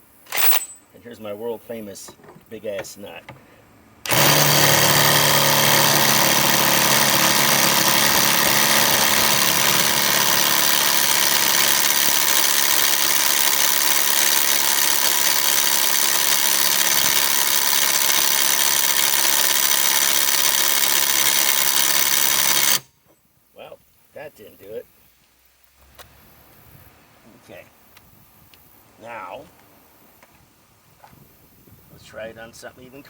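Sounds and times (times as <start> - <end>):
impact wrench hammering: 4.0 - 22.8.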